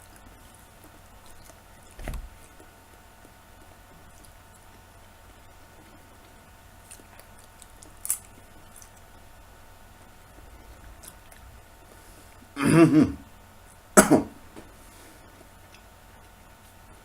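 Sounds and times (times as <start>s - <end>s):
chewing mushrooms: 0.0s - 4.8s, 5.6s - 11.5s
wet crunch: 6.8s - 9.2s
loud burp: 12.6s - 13.2s, 14.0s - 14.3s.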